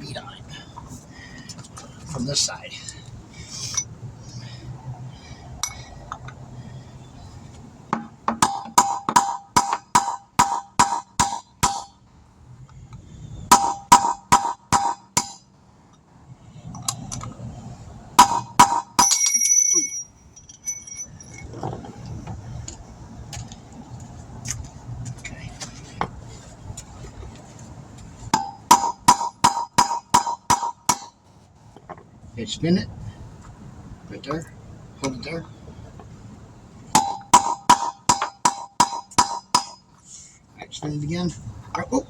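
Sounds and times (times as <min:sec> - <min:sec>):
hammer clanging on steel: 0:08.0 - 0:12.0, 0:18.2 - 0:21.5, 0:28.4 - 0:31.2, 0:37.0 - 0:39.8.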